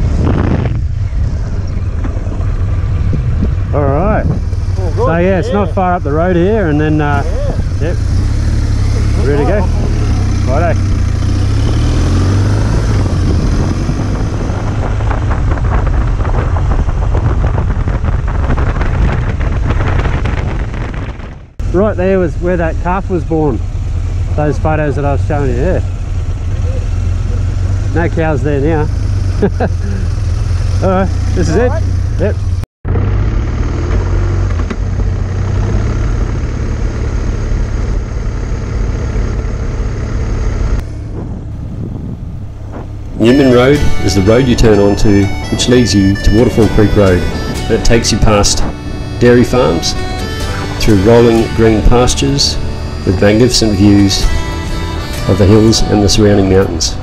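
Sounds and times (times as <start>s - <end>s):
wind noise on microphone: 0.0s - 5.7s, 7.2s - 21.7s, 40.6s - 57.0s
motorcycle engine accelerating: 0.0s - 57.0s.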